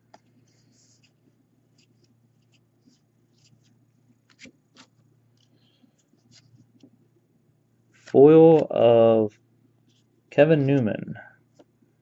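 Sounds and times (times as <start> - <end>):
low steady hum: 0.0 - 12.0
cards rustling: 0.1 - 6.9.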